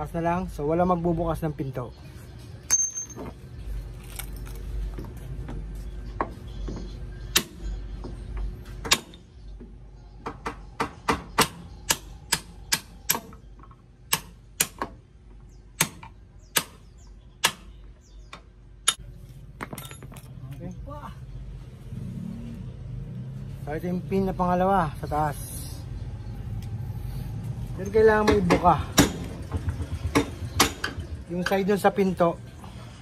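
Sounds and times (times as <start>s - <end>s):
hammer striking metal: 28.2s - 29.4s.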